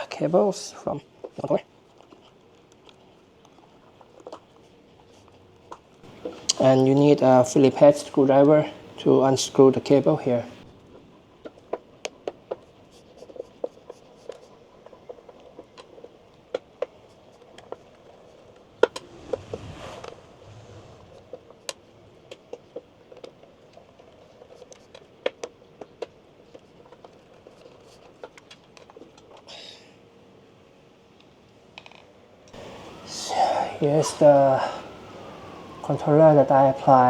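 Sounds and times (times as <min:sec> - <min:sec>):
scraping rustle: 0:18.2 - 0:22.0.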